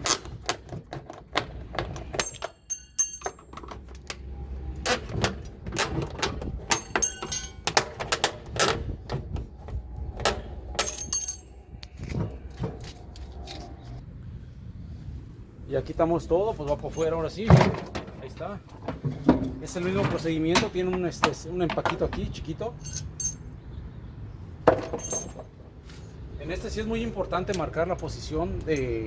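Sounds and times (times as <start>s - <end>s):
metallic jingling: 2.1s - 3.7s, 6.7s - 8.0s, 10.8s - 11.6s, 22.7s - 23.6s, 24.8s - 25.5s.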